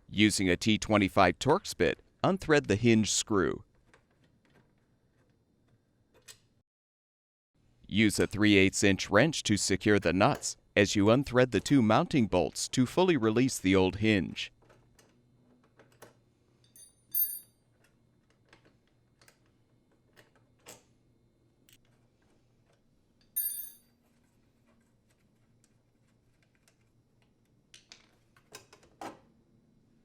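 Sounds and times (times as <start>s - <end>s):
wrench and metal parts clinking: 23.4s - 23.9s.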